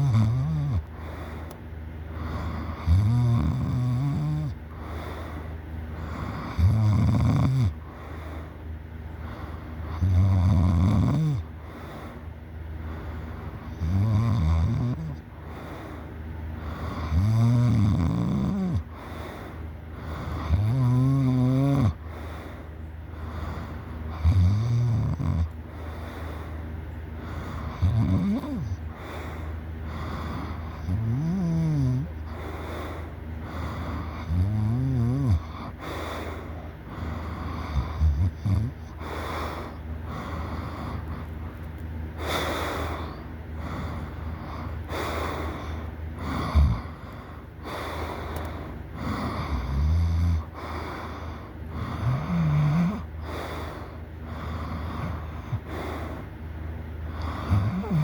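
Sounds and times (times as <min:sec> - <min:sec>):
person snoring loudly: 0:00.0 - 0:01.1, 0:02.2 - 0:04.6, 0:06.0 - 0:07.9, 0:09.9 - 0:11.5, 0:13.6 - 0:15.2, 0:16.6 - 0:19.1, 0:20.0 - 0:22.0, 0:23.2 - 0:25.5, 0:27.2 - 0:32.6, 0:33.5 - 0:41.0, 0:42.2 - 0:48.1, 0:49.0 - 0:51.1, 0:51.7 - 0:56.2, 0:57.1 - 0:58.0.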